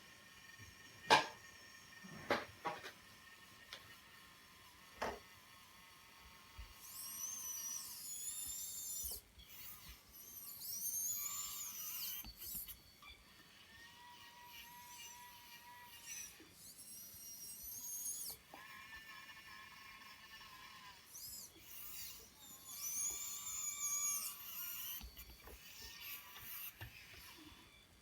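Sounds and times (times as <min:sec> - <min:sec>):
small electric motors whining: 0:00.0 - 0:28.0.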